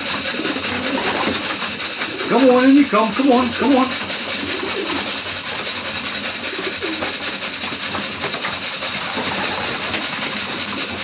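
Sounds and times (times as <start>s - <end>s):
pigeons cooing: 0.0s - 11.0s.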